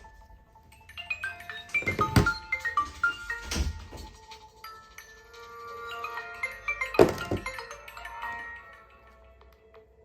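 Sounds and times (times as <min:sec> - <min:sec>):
marimba-like phone ringtone: 0:00.8 - 0:03.4.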